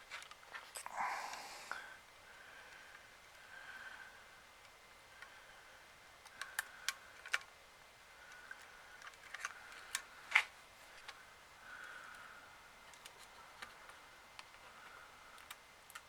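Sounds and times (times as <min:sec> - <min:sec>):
faint high hum: 0:00.6 - 0:16.0
small plastic parts clicking: 0:06.2 - 0:07.5, 0:08.3 - 0:11.2, 0:12.8 - 0:14.7, 0:15.3 - 0:16.0.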